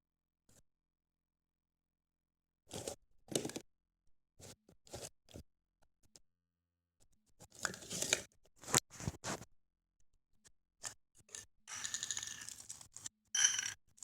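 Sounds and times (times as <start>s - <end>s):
scraping and clicking handling noises: 7.4s - 9.5s.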